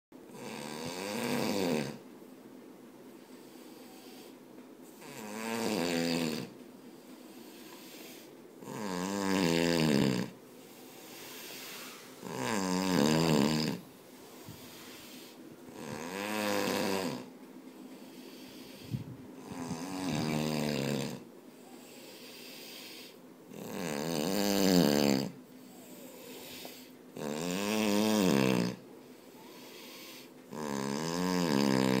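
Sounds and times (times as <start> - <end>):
person snoring loudly: 0.3 - 2.0, 5.0 - 6.5, 7.4 - 10.4, 11.0 - 13.8, 14.6 - 17.3, 18.3 - 28.8, 29.4 - 32.0
quiet breathing: 3.0 - 23.4, 24.6 - 32.0.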